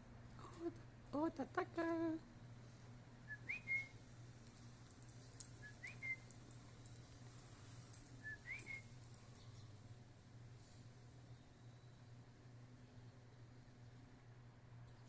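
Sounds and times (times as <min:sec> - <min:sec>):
whistled calls: 0:03.3 - 0:04.0, 0:05.6 - 0:06.4, 0:08.2 - 0:09.7
faint ticks: 0:04.4 - 0:09.4.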